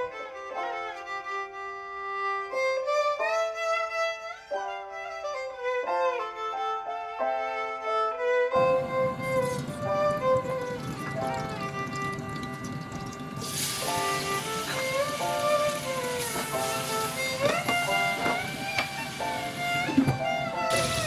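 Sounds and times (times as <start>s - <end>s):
violin melody: 0.0s - 21.0s.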